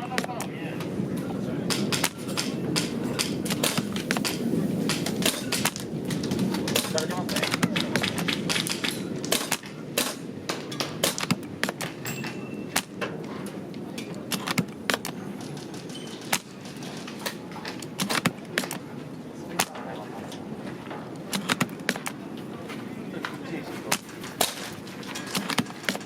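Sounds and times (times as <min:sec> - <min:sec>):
wind on microphone: 0:00.0 - 0:26.0
airsoft guns firing: 0:01.7 - 0:11.9, 0:18.0 - 0:18.8.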